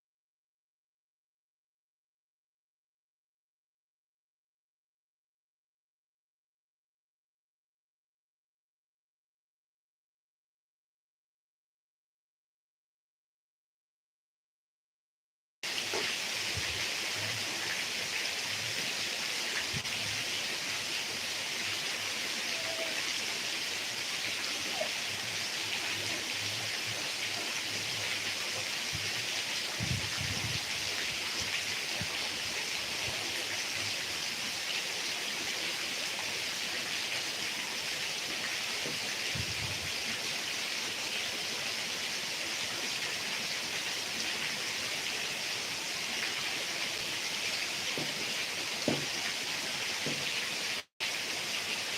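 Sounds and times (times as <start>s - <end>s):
heavy rain: 15.6s - 51.9s.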